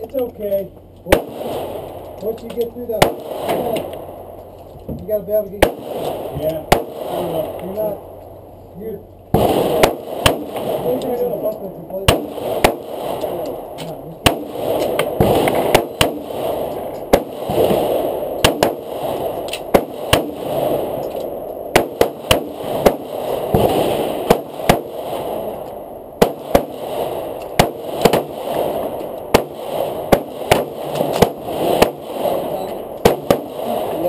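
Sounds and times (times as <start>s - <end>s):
handgun shots: 12.1s - 17.8s, 18.4s - 18.8s.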